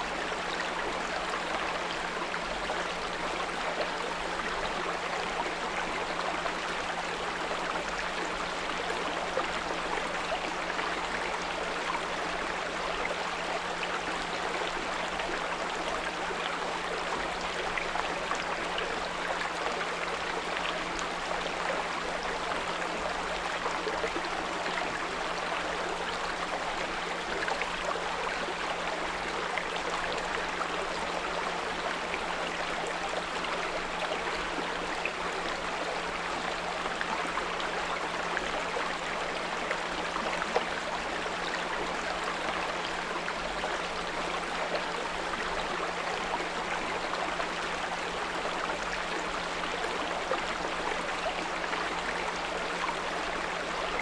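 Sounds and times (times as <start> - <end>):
brook babbling: 0.0 - 54.0.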